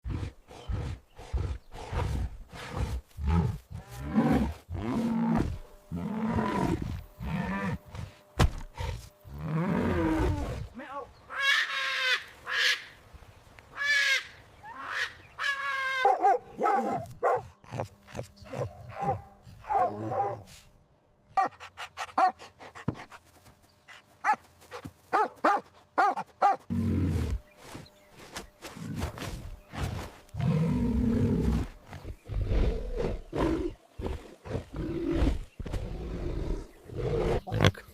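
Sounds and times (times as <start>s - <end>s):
big cat roaring and growling: 0.0s - 8.0s, 8.8s - 10.7s, 30.4s - 37.9s
dog barking: 16.0s - 17.5s, 25.1s - 26.6s.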